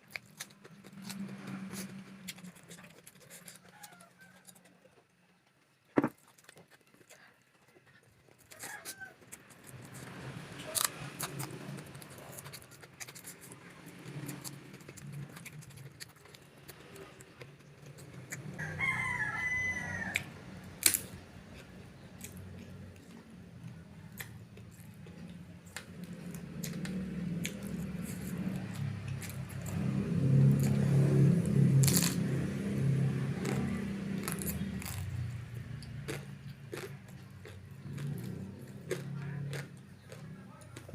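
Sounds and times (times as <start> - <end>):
crunching and chewing vegetables: 0.0 - 40.9
rooster crowing: 3.5 - 4.8, 8.5 - 9.2, 18.5 - 20.6
sharp crunchy clicks: 8.2 - 18.6, 20.0 - 32.7, 33.3 - 40.9.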